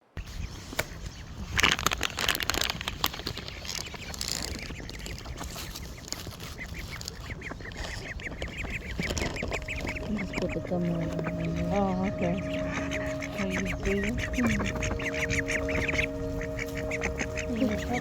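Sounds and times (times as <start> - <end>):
ducks quacking: 6.7 - 18.0
short repeated calls: 9.5 - 18.0.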